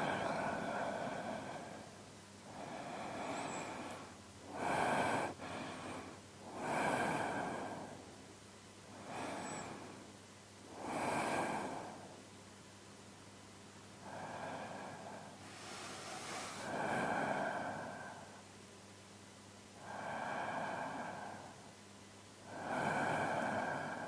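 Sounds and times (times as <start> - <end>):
man breathing while sleeping: 0.0 - 8.2, 8.9 - 10.1, 10.7 - 12.2, 14.0 - 18.4, 19.8 - 21.6, 22.5 - 24.0.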